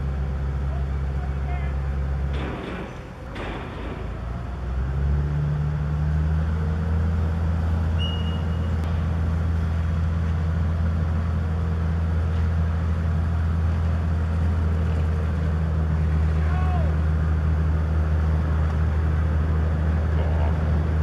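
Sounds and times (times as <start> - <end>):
large diesel engine droning: 0.0 - 21.0
short high squeak: 8.0 - 8.8.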